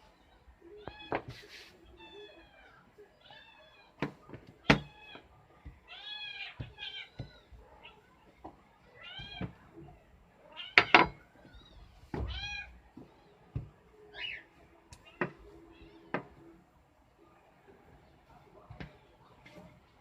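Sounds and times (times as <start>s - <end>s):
cat meowing: 10.4s - 13.3s.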